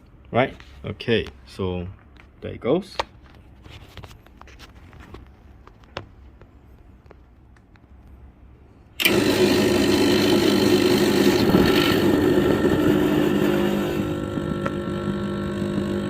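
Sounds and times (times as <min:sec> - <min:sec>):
espresso machine pump humming: 0:09.0 - 0:16.0.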